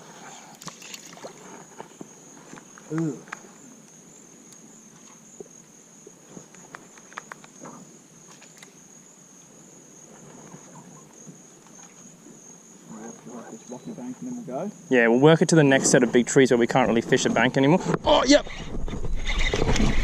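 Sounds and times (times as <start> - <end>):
insects high-pitched drone: 0.0 - 20.0
faint clicks: 6.5 - 8.8.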